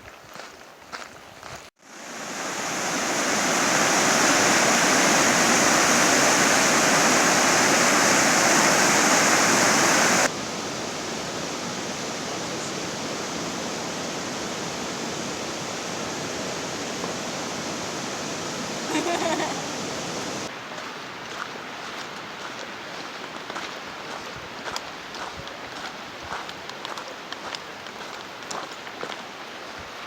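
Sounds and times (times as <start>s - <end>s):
rushing water roar: 1.8s - 24.0s.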